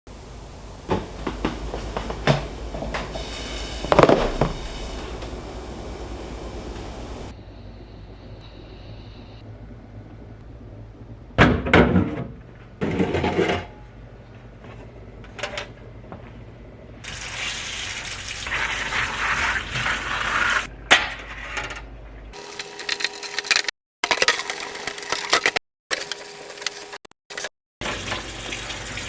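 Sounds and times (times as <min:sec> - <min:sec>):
hissing scraping noise: 0:00.1 - 0:07.3
household objects clattering: 0:00.1 - 0:07.3
low hum: 0:00.1 - 0:07.3.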